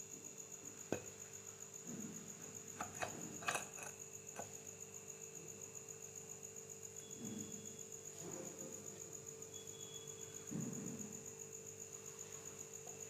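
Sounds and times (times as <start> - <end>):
metal parts clicking and tapping: 2.8 - 4.6.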